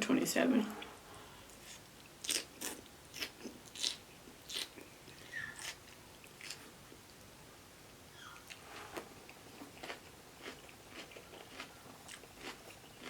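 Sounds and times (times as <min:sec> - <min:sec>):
chewing crunchy food: 0:01.5 - 0:07.2, 0:08.3 - 0:13.0.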